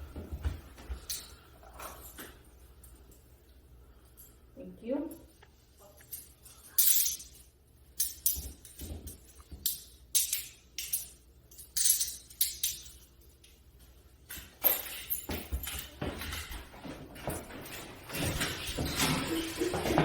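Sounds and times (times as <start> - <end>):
handcuff chain clinking: 1.0 - 3.3, 5.1 - 16.6.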